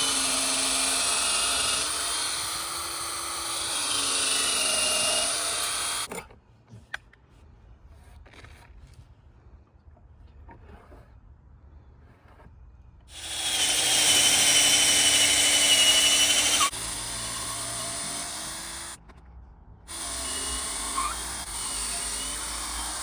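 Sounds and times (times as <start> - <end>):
power drill whining: 0.0 - 6.1, 13.1 - 19.0, 19.9 - 23.0.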